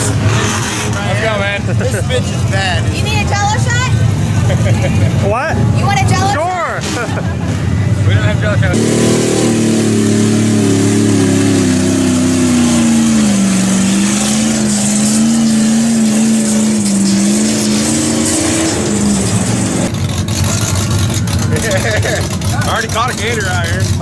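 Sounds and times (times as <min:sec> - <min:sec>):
vehicle engine running: 0:00.0 - 0:24.0.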